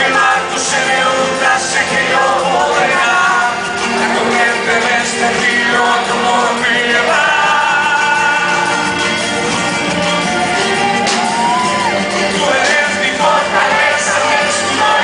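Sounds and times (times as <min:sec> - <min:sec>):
rock band playing: 0:00.0 - 0:15.0.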